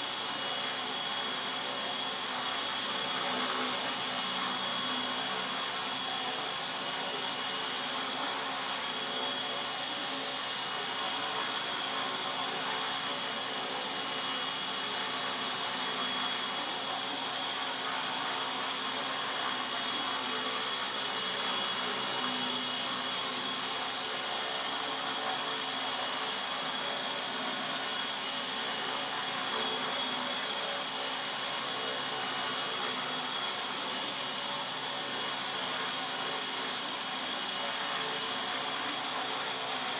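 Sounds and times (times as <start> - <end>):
rc helicopter hovering: 0.0 - 39.9.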